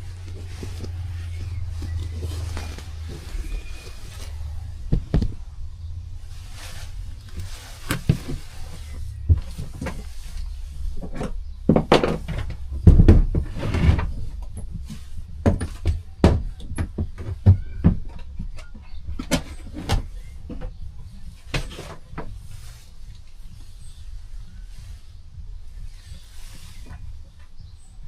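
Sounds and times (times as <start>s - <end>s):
low steady hum: 0.0s - 28.0s.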